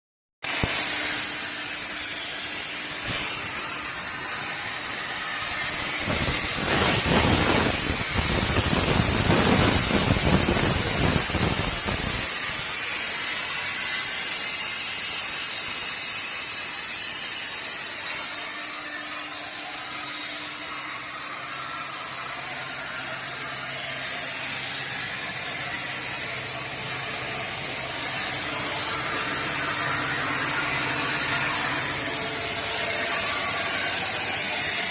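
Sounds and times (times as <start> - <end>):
plasma torch hissing: 0.5 - 34.9
rough crackling of plasma cutting: 0.5 - 34.9.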